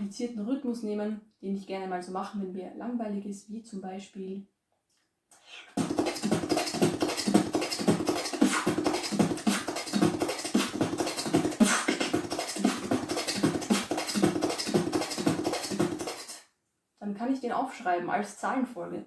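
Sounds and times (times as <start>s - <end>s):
vocal beatboxing: 5.4s - 16.4s.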